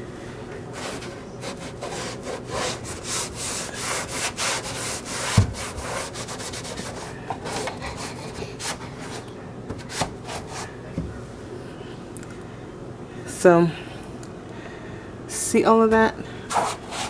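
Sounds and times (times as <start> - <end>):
rag scrubbing metal: 0.7 - 10.8, 16.5 - 17.0.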